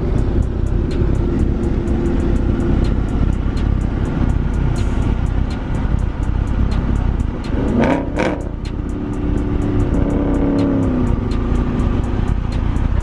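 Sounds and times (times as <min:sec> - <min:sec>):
car engine revving: 0:00.0 - 0:13.0
music with fast ticking beat: 0:00.0 - 0:13.0
road rumble: 0:00.0 - 0:13.0.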